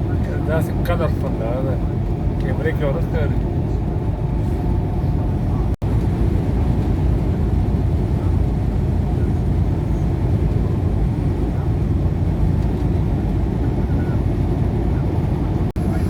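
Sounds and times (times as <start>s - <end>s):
vehicle engine and road rumble: 0.0s - 16.0s.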